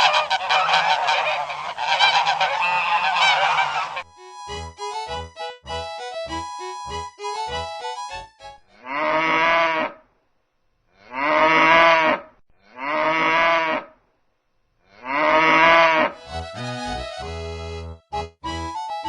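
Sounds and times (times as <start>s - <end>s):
music: 4.0s - 8.7s, 16.2s - 19.0s
cow mooing: 11.0s - 13.8s.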